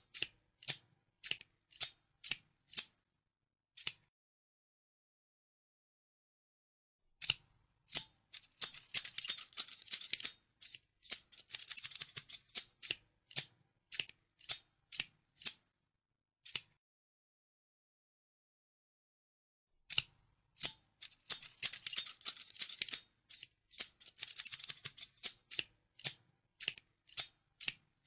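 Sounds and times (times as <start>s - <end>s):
scissors snipping: 0.1s - 2.9s, 3.8s - 4.1s, 7.2s - 15.6s, 16.4s - 16.8s, 19.9s - 27.8s.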